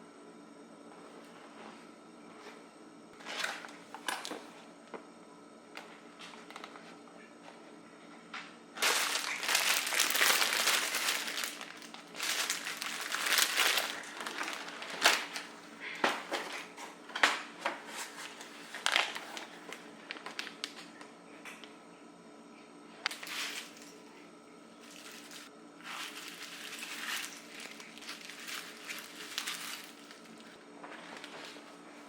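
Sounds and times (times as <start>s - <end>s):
plastic packaging crinkling: 8.8s - 15.6s, 18.0s - 21.0s, 23.1s - 24.0s, 24.8s - 31.8s.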